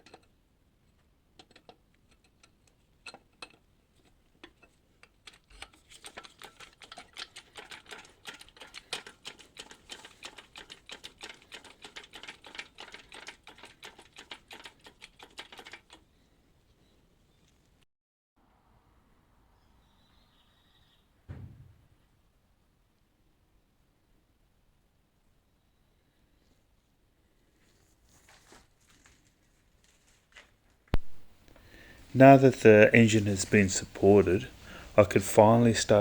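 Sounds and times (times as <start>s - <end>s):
rapid metallic clicking and rattling: 4.5s - 16.0s.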